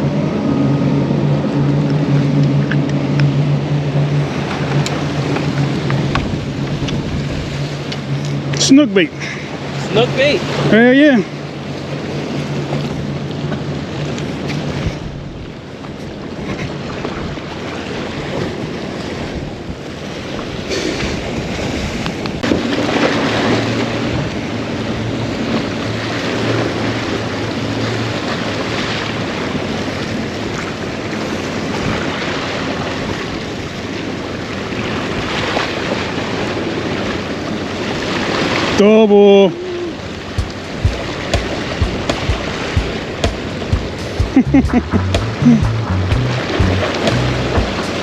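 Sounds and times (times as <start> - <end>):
boat engine hum: 0.0 - 20.6, 39.5 - 48.0
surf washing: 0.0 - 48.0.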